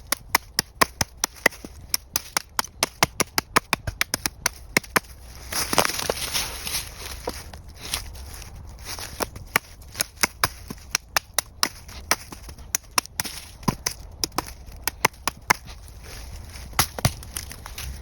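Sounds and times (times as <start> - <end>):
clicks and knocks on wood: 0.0 - 6.4, 9.1 - 15.9.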